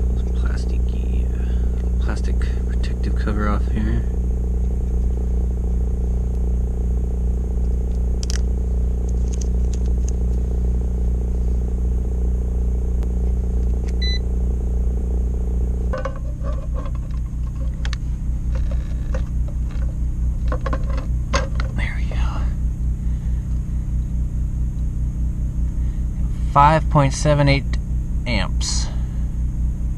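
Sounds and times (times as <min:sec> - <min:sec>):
motor hum: 0:00.0 - 0:29.9
short electronic beep: 0:14.0 - 0:14.2.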